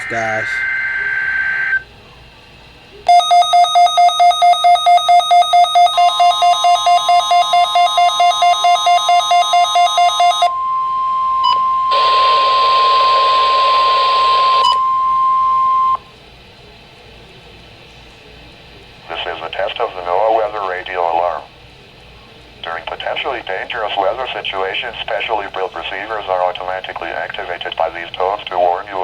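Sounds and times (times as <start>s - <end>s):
electronic alarm beeping: 0.0s - 1.8s, 3.1s - 16.0s
steady high alarm tone: 0.0s - 1.9s, 3.0s - 16.1s.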